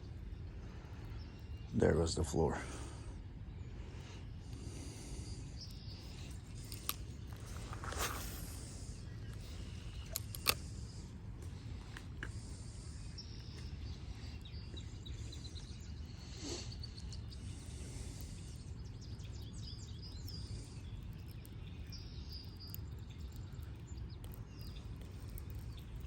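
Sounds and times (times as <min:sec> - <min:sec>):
low outdoor rumble: 0:00.0 - 0:26.0
small birds chirping: 0:00.0 - 0:26.0.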